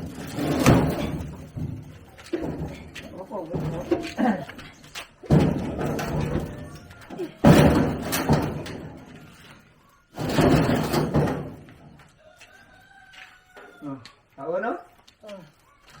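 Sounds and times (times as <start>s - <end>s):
heavy bangs: 5.2s - 9.5s, 10.1s - 12.0s.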